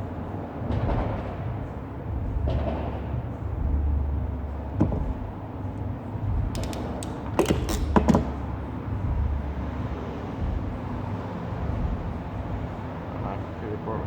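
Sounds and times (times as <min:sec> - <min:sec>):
crimping tool clicking: 0:06.6 - 0:07.9.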